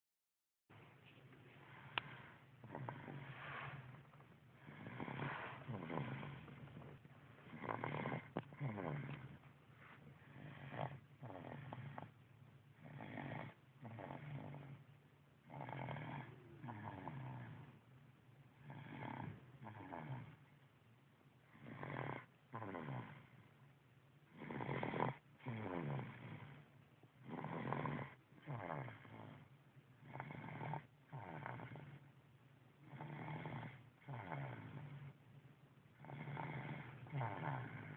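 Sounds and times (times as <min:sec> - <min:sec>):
person snoring: 0:01.7 - 0:04.0, 0:04.6 - 0:06.6, 0:07.5 - 0:09.4, 0:10.2 - 0:12.1, 0:12.8 - 0:14.8, 0:15.5 - 0:17.8, 0:18.6 - 0:20.4, 0:21.5 - 0:23.3, 0:24.3 - 0:26.6, 0:27.2 - 0:32.1, 0:32.8 - 0:35.1, 0:36.0 - 0:37.9.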